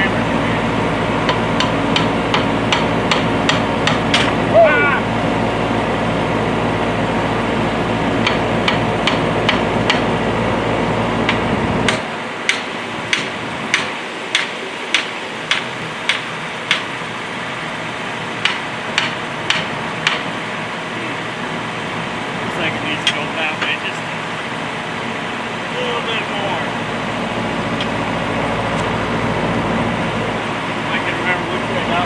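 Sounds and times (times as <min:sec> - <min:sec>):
backhoe engine running: 0:00.0 - 0:32.0
hammer blows on steel: 0:08.2 - 0:10.2.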